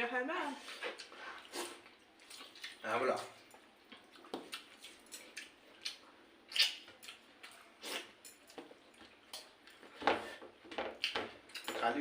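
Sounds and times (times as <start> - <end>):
wet eating slurps and smacks: 0.8 - 9.8.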